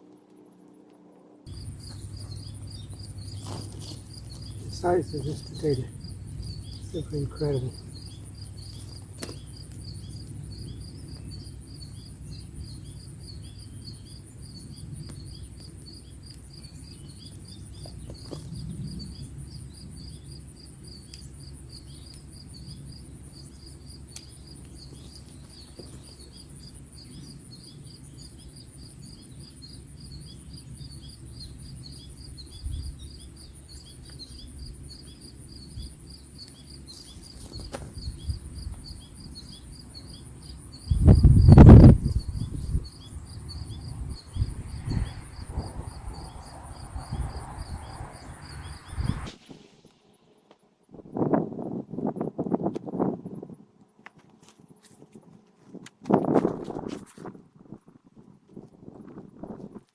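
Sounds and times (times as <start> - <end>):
insects chirping: 1.5 - 59.9
low rumble: 40.9 - 49.8.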